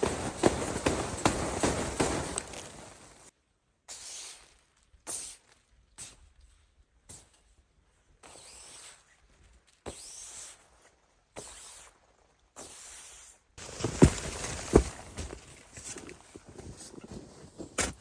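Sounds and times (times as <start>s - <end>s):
footsteps crunching in snow: 0.0s - 3.3s, 13.6s - 18.0s
heavy thumps: 0.0s - 3.3s, 13.6s - 16.7s.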